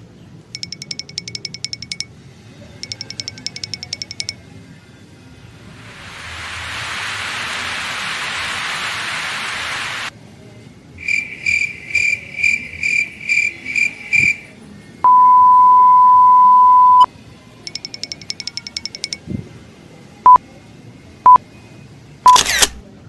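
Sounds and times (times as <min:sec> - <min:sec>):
loud steady electronic beep: 0:15.1 - 0:17.1
short beeps: 0:15.1 - 0:17.1.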